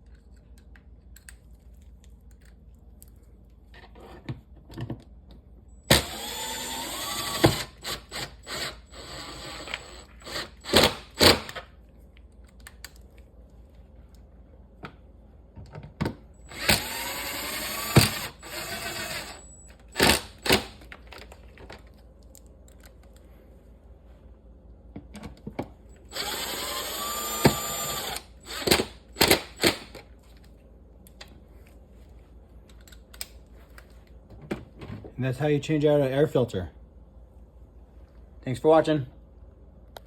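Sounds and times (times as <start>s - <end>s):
impact driver driving screws: 5.9s - 11.6s, 16.5s - 20.8s, 26.1s - 30.0s.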